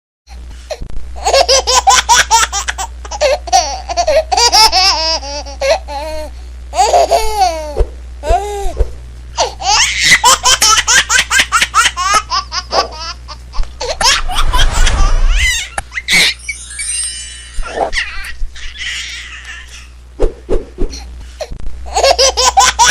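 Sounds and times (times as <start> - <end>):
baby laughing: 1.2 - 6.1, 6.8 - 8.5, 9.4 - 16.4, 17.7 - 20.0, 21.9 - 22.9
low hum: 7.7 - 9.5, 12.7 - 18.7.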